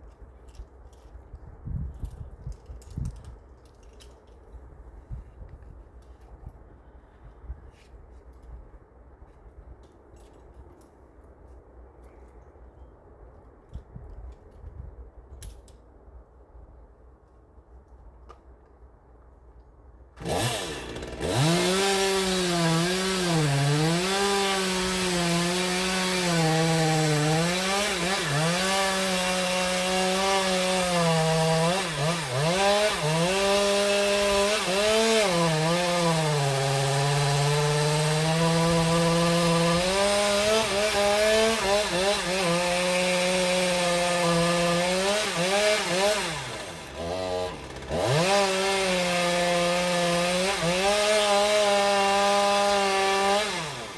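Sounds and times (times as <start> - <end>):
chainsaw cutting timber: 20.2 - 53.9.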